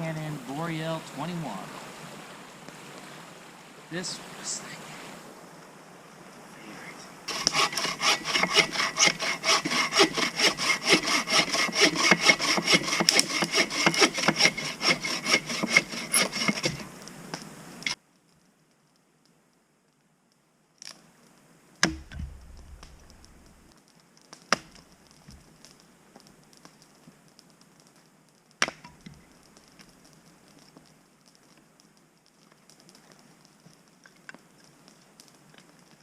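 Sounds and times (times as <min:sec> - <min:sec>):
bow saw cutting wood: 0:07.3 - 0:16.9
sharp knocks: 0:21.8 - 0:23.0.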